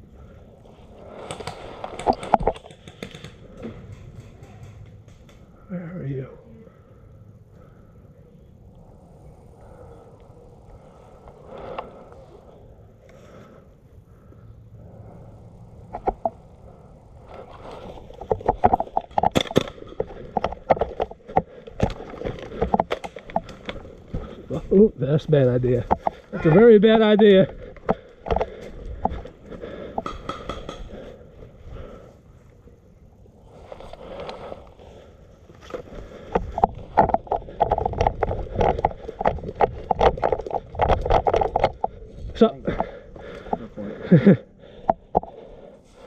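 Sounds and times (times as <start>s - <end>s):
rapid knocks and clicks: 25.8s - 26.2s.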